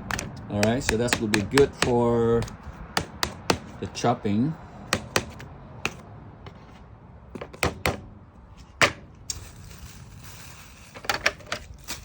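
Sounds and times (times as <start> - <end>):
knocks and clicks of handling: 0.0 - 3.7.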